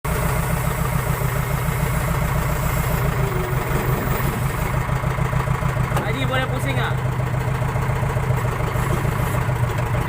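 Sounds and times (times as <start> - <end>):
diesel engine running at low speed: 0.0 - 10.0.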